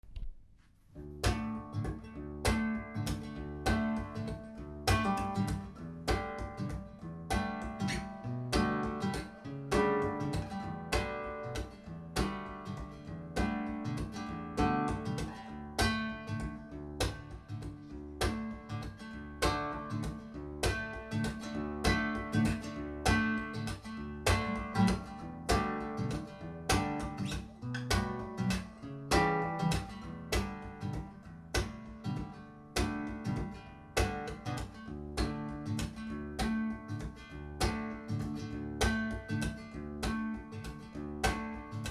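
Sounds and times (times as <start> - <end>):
acoustic guitar strumming: 1.0 - 41.9.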